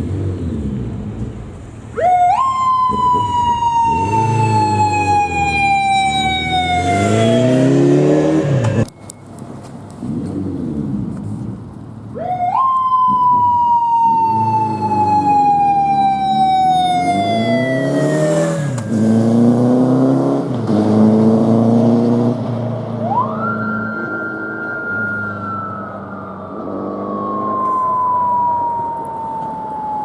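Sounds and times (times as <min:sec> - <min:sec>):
motorcycle engine revving: 0:00.0 - 0:02.2, 0:02.9 - 0:08.9, 0:10.0 - 0:12.2, 0:14.2 - 0:24.4
motorcycle siren wailing: 0:01.9 - 0:09.0, 0:12.1 - 0:20.5, 0:23.0 - 0:30.0.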